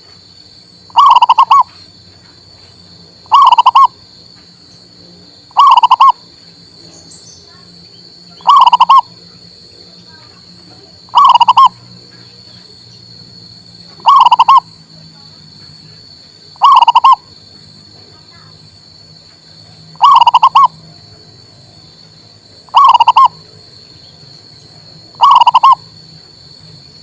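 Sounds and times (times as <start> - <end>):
dove cooing: 0.9 - 1.8, 3.3 - 3.9, 5.5 - 6.2, 8.4 - 9.1, 11.1 - 11.8, 14.0 - 14.6, 16.6 - 17.2, 20.0 - 20.7, 22.7 - 23.4, 25.2 - 25.8.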